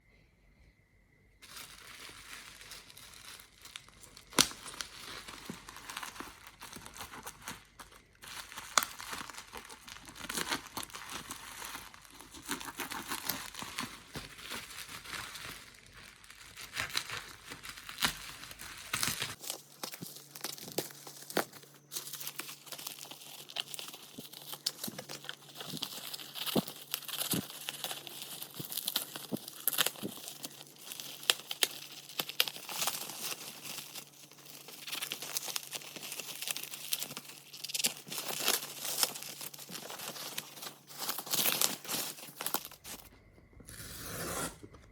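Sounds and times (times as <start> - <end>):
plastic wrap crinkling and tearing: 1.4 - 43.1.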